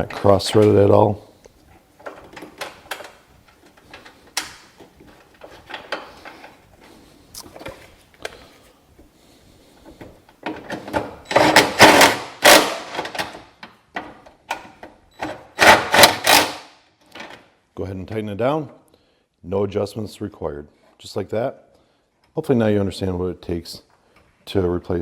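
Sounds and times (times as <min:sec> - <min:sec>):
impact wrench bursts: 0:11.3 - 0:13.2, 0:15.5 - 0:16.8.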